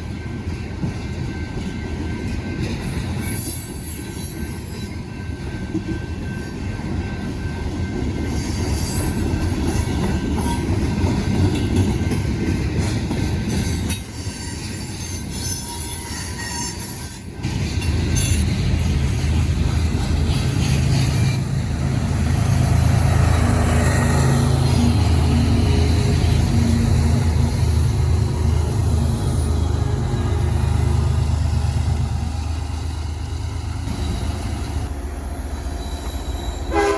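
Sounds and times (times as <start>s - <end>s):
train wheels rumbling on rails: 0.0s - 36.9s
high wheel squeal: 14.0s - 17.5s, 20.4s - 31.8s, 33.8s - 36.9s.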